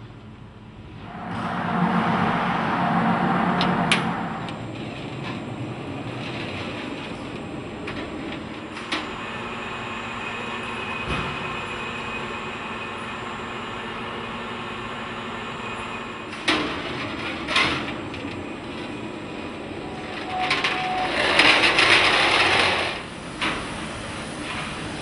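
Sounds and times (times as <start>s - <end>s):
loud noisy machine burst: 1.0s - 5.2s.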